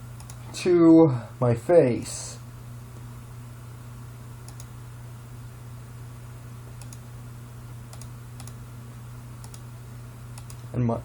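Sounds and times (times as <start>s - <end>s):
low electrical hum: 0.0s - 11.0s
computer mouse clicks: 0.2s - 0.4s, 4.4s - 4.7s, 6.8s - 7.0s, 7.9s - 8.6s, 9.4s - 9.7s, 10.3s - 10.7s.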